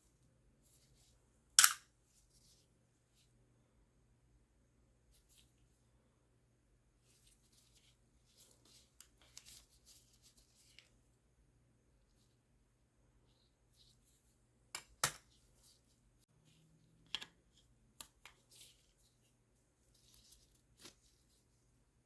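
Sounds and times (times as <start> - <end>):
tools and parts clicking: 1.6 - 1.8.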